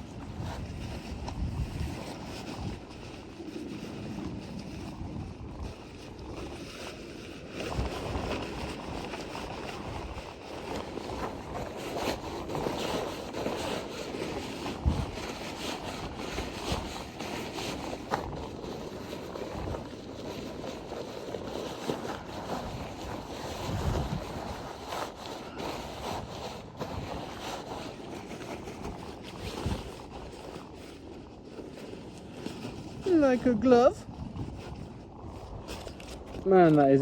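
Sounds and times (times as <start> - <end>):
tarp rustling and crinkling: 0.0 - 37.0
wind buffeting microphone: 0.0 - 37.0.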